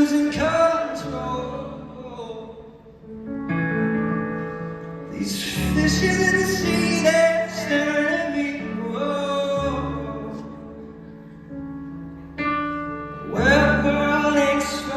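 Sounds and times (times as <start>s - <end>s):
person singing: 5.1s - 10.8s.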